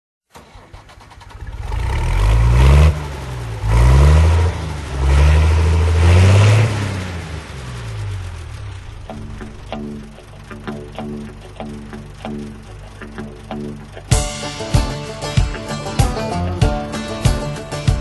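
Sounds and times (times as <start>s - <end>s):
motor revving: 0.8s - 9.7s.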